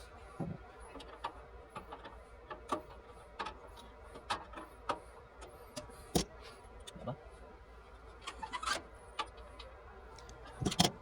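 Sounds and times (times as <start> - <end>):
clicks and knocks of metal parts: 10.2 - 11.0.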